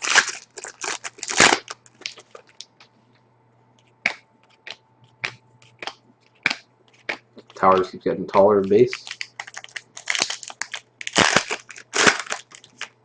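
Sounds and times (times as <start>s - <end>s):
foil wrapper crinkling and tearing: 0.0s - 2.7s, 8.6s - 13.0s.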